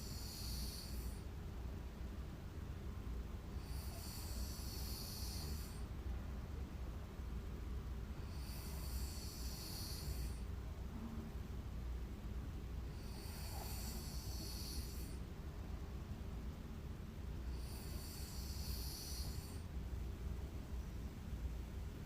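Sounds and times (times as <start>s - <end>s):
person snoring: 0.0s - 1.2s, 3.6s - 5.8s, 8.2s - 10.4s, 12.9s - 15.2s, 17.5s - 19.6s
steady low hum: 0.0s - 22.0s.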